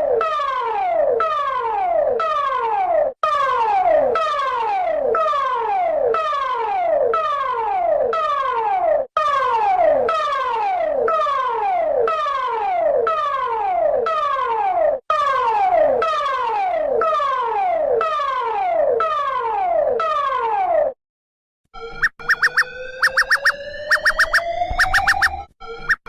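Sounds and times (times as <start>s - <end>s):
electronic alarm falling sweeps: 21.8s - 26.0s.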